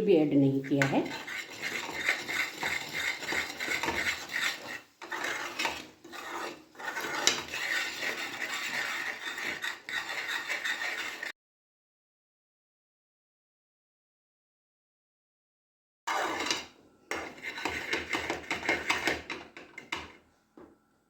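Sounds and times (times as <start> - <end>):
utensil scraping thick paste in pan: 0.4 - 11.3, 16.1 - 20.2.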